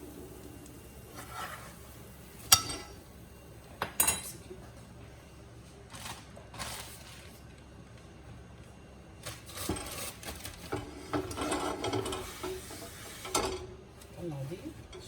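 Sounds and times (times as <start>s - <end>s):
soft scraping and rustling: 1.1s - 1.9s
utensils and dishes clinking: 2.4s - 3.0s, 3.9s - 4.4s, 9.5s - 13.7s.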